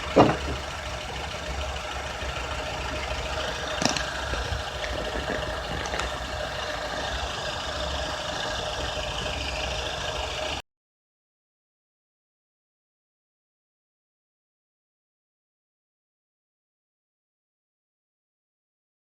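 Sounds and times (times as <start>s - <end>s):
car engine rattling: 0.0s - 10.6s.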